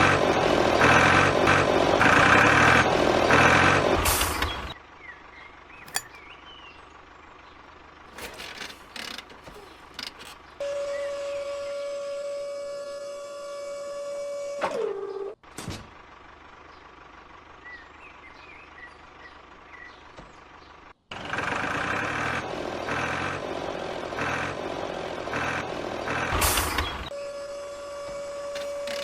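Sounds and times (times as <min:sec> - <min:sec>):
small motor whining: 0:27.1 - 0:29.0.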